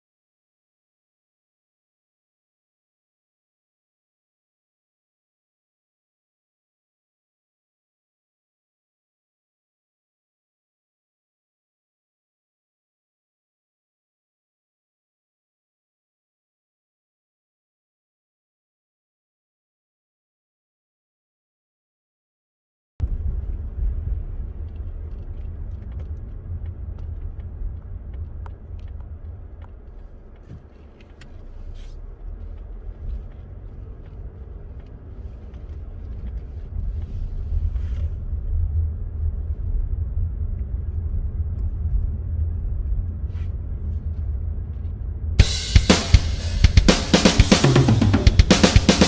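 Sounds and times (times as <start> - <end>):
car road and engine rumble: 23.0 - 49.0.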